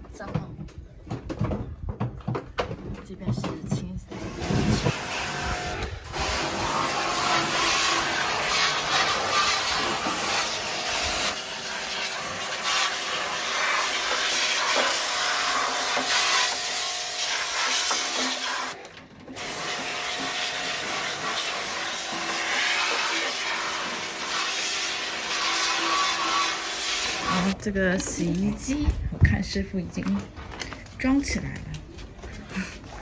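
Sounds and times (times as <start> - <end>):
machine motor running: 4.1 - 27.6.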